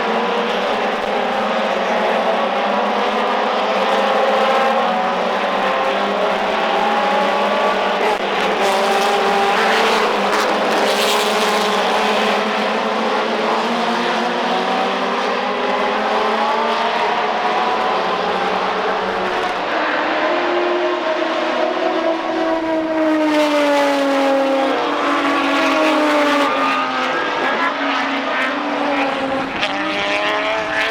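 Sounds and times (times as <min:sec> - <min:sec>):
race car engines accelerating: 0:00.0 - 0:30.9.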